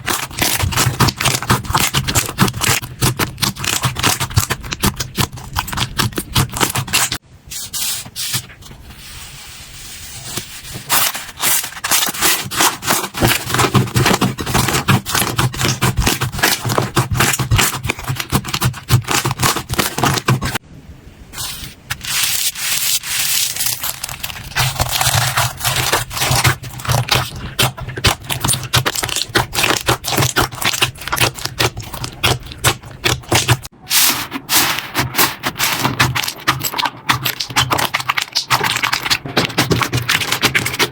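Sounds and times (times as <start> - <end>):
slime crackling and popping: 0.0 - 7.2, 22.0 - 33.7, 34.6 - 40.9.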